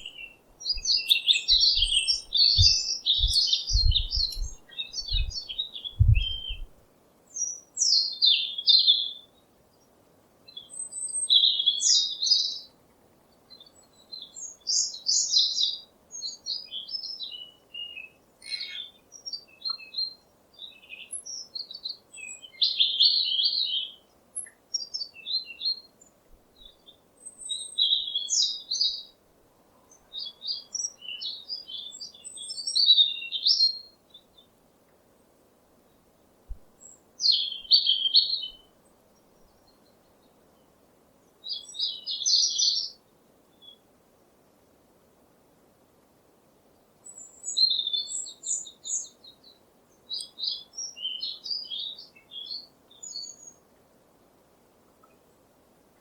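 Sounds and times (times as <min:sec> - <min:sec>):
songbirds chirping: 0:00.0 - 0:56.0
low thuds: 0:01.8 - 0:05.4, 0:06.0 - 0:06.7.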